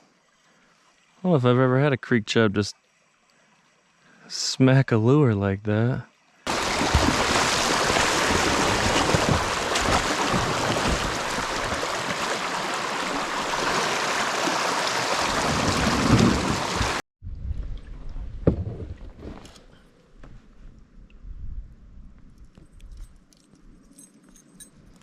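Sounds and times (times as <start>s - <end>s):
scattered water sounds: 6.1s - 17.0s
creek water rushing: 6.5s - 17.0s.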